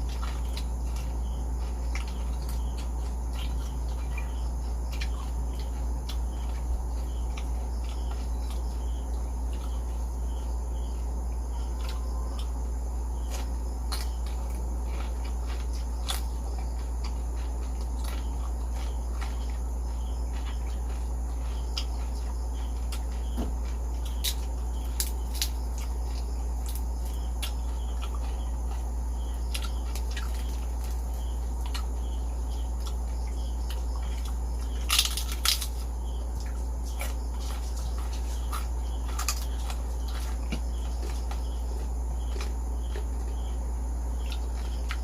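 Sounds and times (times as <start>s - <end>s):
chewing crispy pork skin: 0.0s - 45.0s
steady low hum: 0.0s - 45.0s.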